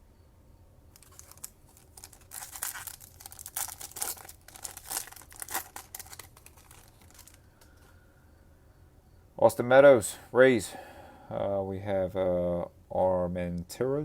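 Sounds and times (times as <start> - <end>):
card pack wrapper tearing and crinkling: 1.0 - 7.4.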